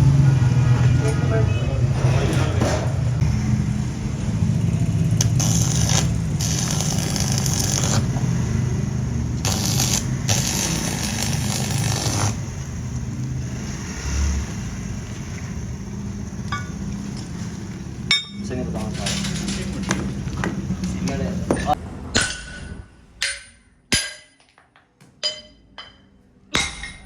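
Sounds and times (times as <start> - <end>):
engine humming: 0.0 - 23.6
scraping noise: 1.8 - 3.2.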